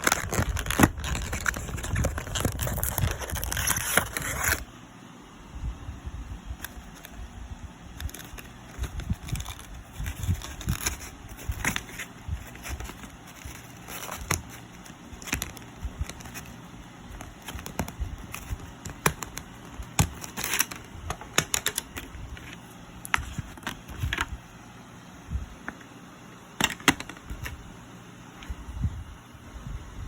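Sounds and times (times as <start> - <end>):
packaging crinkling and clicking: 0.0 - 4.6, 8.0 - 24.3.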